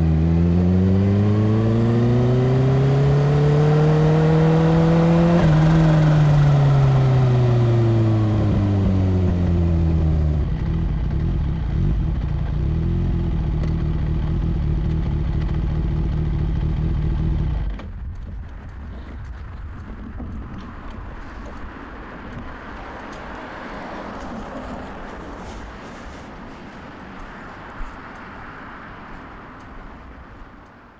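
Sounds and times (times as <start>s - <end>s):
motorcycle engine winding down: 0.0s - 17.9s.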